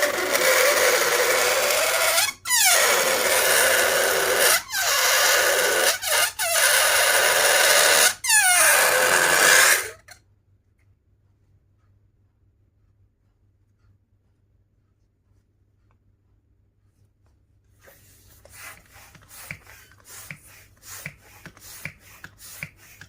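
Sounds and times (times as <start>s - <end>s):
air squealing out of balloon: 0.0s - 10.2s.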